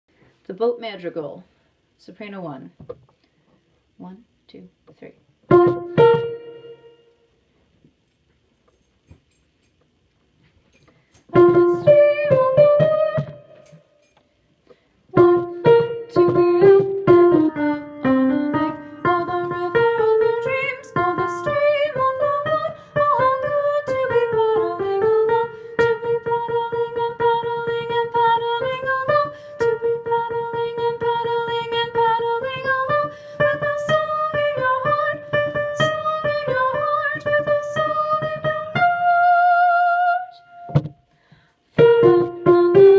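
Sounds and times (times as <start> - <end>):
piano playing chords and melody: 5.5 - 7.1, 11.4 - 13.6, 15.1 - 39.4, 41.8 - 42.9.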